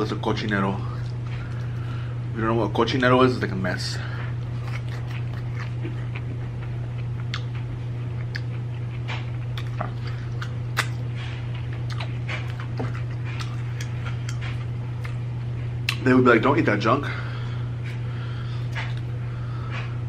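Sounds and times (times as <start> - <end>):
steady low hum: 0.0 - 20.0
person chewing food: 4.2 - 16.0, 17.7 - 20.0
wet mouth clicks and smacks: 7.2 - 7.6, 8.2 - 8.6, 9.5 - 11.1, 11.8 - 15.2, 15.8 - 16.0.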